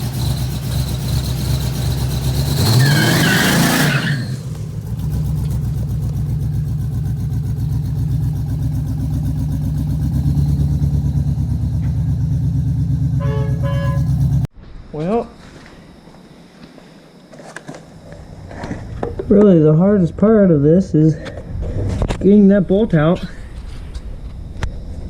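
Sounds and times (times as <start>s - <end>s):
car engine idling and revving: 0.0s - 14.5s.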